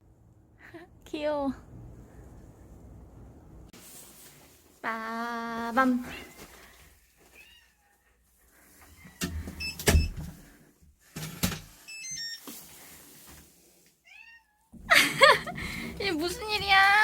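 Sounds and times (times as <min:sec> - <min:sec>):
cat meowing: 0:07.4 - 0:08.0, 0:14.0 - 0:14.7.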